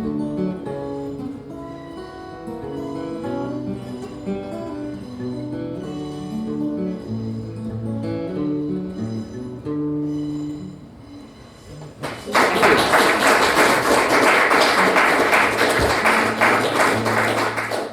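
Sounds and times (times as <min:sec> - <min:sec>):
acoustic guitar plucking: 0:00.0 - 0:17.9
audience applause: 0:12.0 - 0:17.9.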